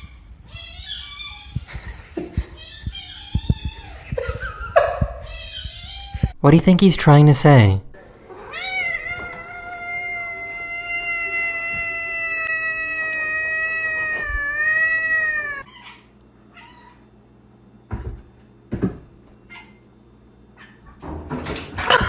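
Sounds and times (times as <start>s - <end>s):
cat meowing long: 8.5s - 15.7s.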